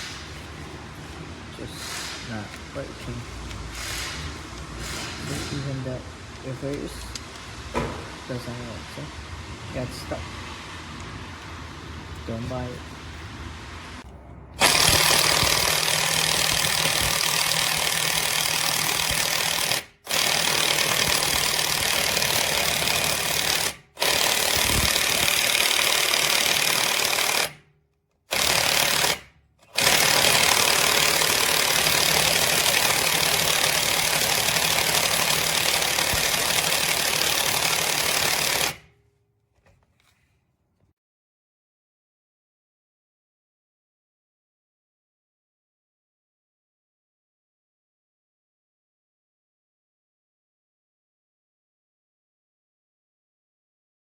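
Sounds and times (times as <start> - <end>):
impact wrench hammering: 14.6 - 27.6, 28.3 - 38.8.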